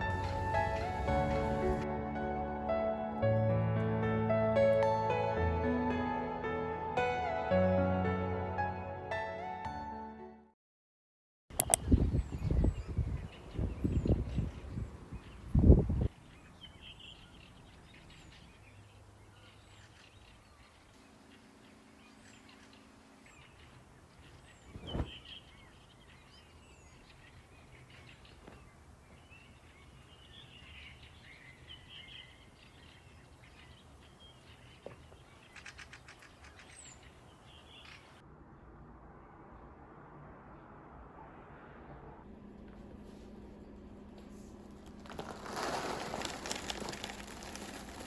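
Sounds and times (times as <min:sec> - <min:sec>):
faint birdsong: 0:11.6 - 0:39.7
low background rumble: 0:38.4 - 0:48.0.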